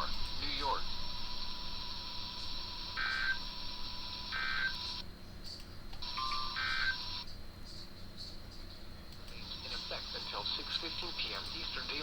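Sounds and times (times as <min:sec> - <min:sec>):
radio receiver hiss: 0:00.0 - 0:05.0, 0:09.3 - 0:12.0.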